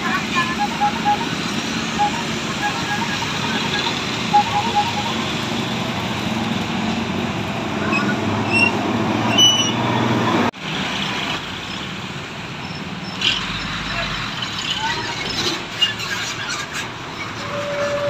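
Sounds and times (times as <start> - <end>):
bus diesel engine rumbling: 0.0 - 18.0
short high chirps: 0.4 - 5.3.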